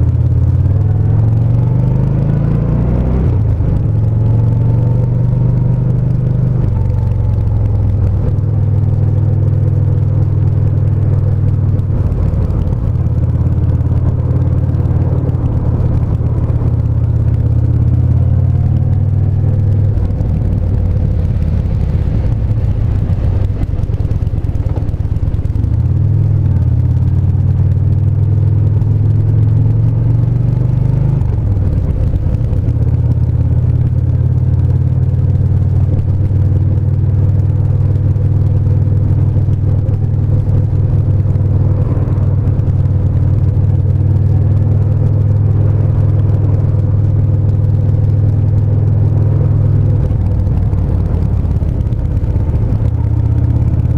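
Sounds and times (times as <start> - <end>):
motorcycle engine running: 0.0 - 53.9.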